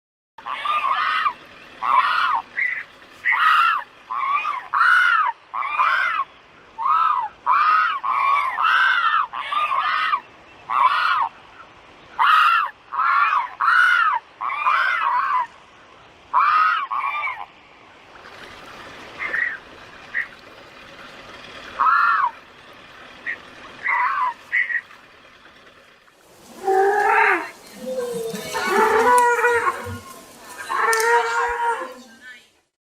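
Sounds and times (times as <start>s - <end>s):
large bird honking: 0.4s - 11.3s, 21.4s - 25.5s.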